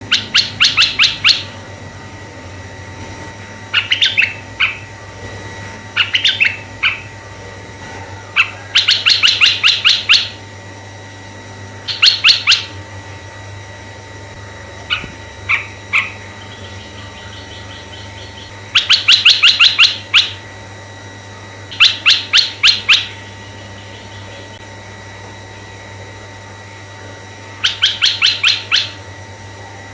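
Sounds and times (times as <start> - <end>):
bulbul chattering calls: 0.0 - 1.6, 3.7 - 4.9, 6.0 - 7.2, 8.4 - 10.4, 11.9 - 12.8, 14.9 - 20.4, 21.7 - 23.2, 27.6 - 29.0.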